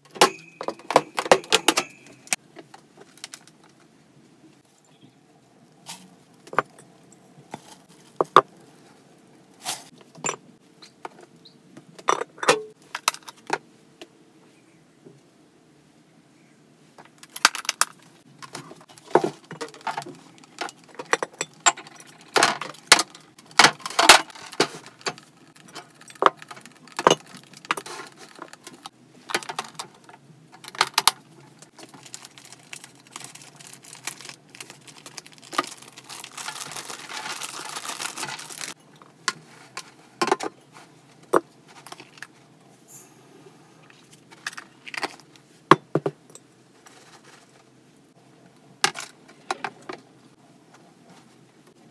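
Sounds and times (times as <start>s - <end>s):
plastic cage parts clattering: 0.1s - 2.4s, 17.2s - 38.8s.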